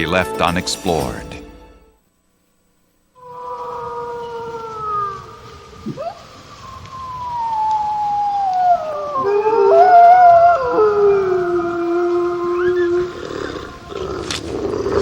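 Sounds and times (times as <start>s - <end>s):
wolves howling: 3.2s - 15.0s.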